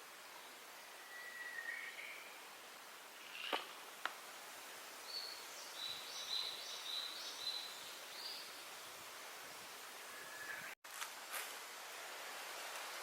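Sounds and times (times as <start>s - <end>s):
outdoor background hiss: 0.0s - 13.0s
songbird singing: 0.3s - 2.5s, 3.2s - 3.8s, 5.0s - 9.1s, 10.0s - 10.8s.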